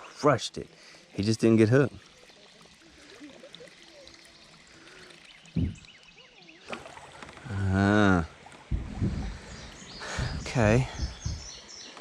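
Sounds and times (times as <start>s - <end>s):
river water trickling: 0.0s - 12.0s
short low thump: 5.6s - 5.9s, 8.7s - 9.7s
drawn-out human vocal sound: 7.4s - 8.3s
faint bird chirps: 9.0s - 12.0s.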